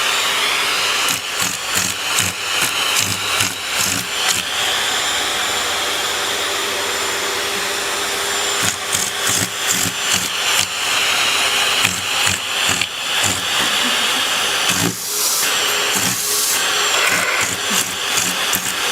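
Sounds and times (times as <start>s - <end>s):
vacuum cleaner running: 0.0s - 18.9s.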